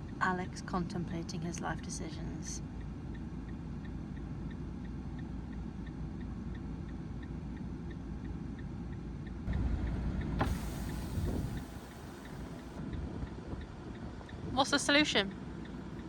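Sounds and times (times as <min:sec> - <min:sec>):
low vehicle rumble: 0:09.5 - 0:12.8
faint regular ticking: 0:10.4 - 0:12.8.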